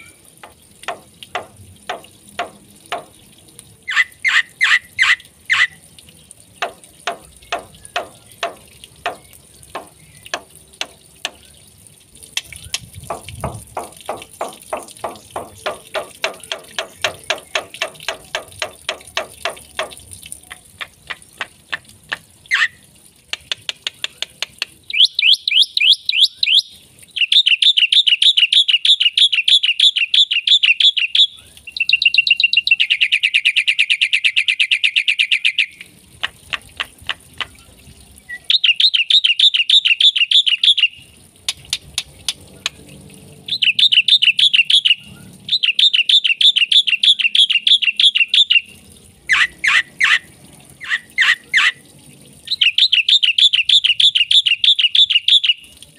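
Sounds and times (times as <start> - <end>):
starling singing: 43.5 - 48.7.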